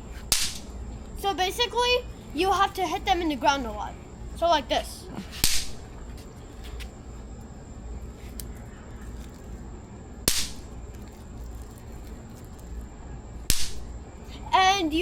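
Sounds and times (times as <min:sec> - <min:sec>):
snap pops cracking on ground: 0:00.3 - 0:00.7, 0:05.4 - 0:05.9, 0:10.3 - 0:11.1, 0:13.4 - 0:13.9.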